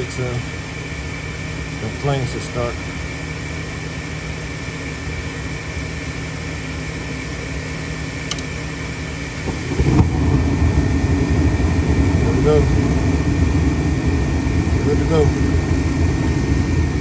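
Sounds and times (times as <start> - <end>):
furnace burners lighting: 0.0 - 3.9, 8.2 - 17.0
furnace motor humming: 0.0 - 17.0
faint click: 8.3 - 8.5.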